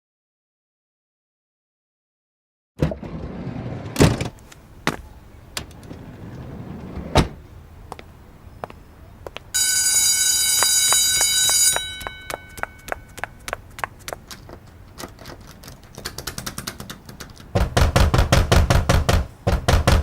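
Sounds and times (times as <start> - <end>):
scattered clicks: 12.0 - 17.5
knocks and thuds: 17.5 - 20.0.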